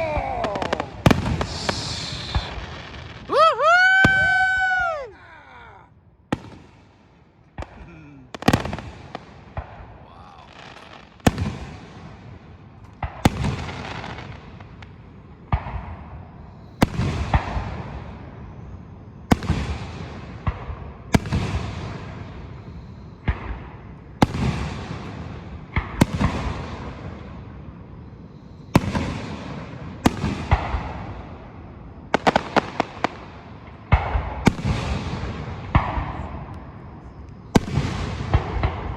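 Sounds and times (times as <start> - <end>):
firework pops: 0.0 - 3.4
firework shells bursting: 0.0 - 5.2
firework crackle and rumble: 0.0 - 38.9.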